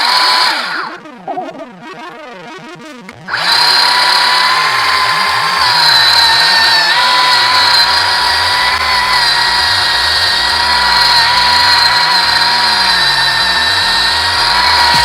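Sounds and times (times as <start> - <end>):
electric chainsaw cutting wood: 0.0 - 1.0, 3.3 - 15.0.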